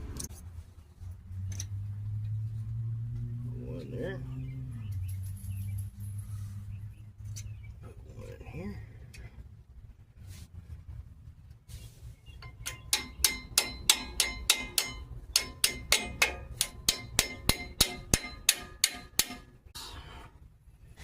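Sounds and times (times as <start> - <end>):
hammer striking metal: 12.4 - 19.6.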